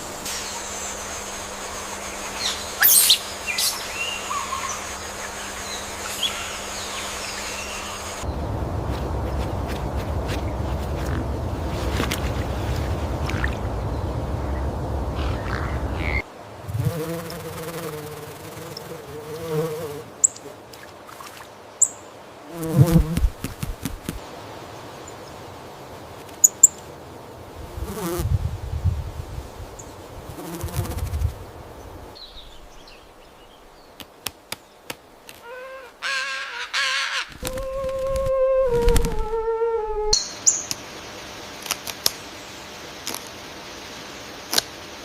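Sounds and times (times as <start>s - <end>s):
flying insect buzzing: 15.2s - 20.1s, 22.5s - 24.2s, 27.6s - 28.4s, 30.2s - 31.4s, 37.3s - 40.2s.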